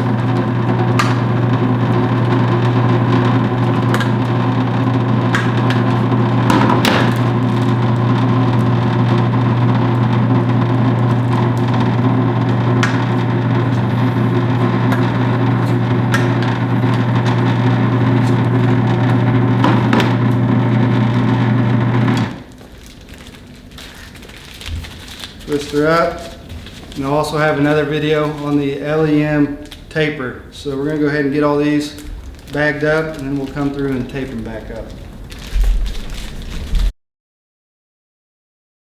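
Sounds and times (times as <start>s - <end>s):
electric meat grinder motor hum: 0.0s - 22.6s.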